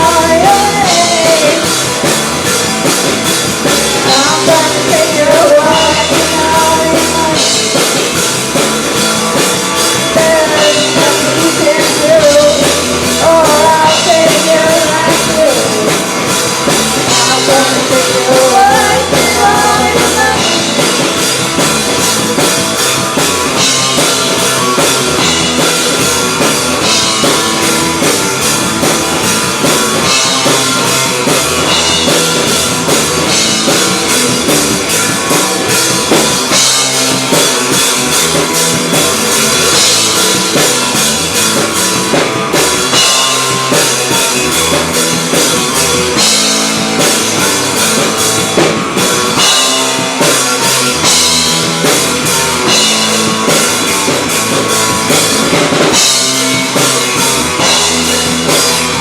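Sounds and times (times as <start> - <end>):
person singing: 0.0 - 1.9, 4.0 - 8.2, 9.9 - 21.2
live rock band playing: 0.0 - 59.0.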